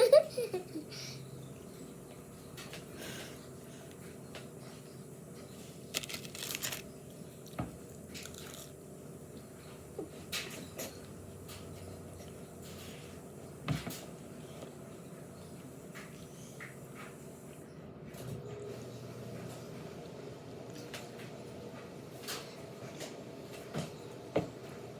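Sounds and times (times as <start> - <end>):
steady low hum: 0.0 - 17.9
crunching while eating: 2.6 - 13.1.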